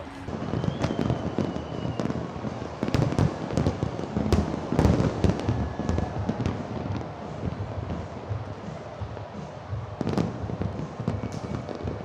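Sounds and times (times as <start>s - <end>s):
low rumble: 0.0s - 0.5s
fireworks bangs and crackles: 0.0s - 12.0s.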